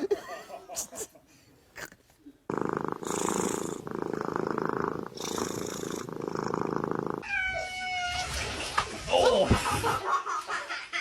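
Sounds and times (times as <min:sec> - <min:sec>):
cat purring: 0:01.8 - 0:07.3.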